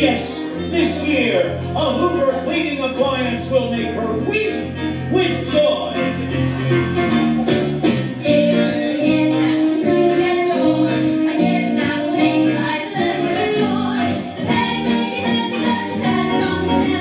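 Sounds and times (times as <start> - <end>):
song with band accompaniment: 4.1 - 17.0.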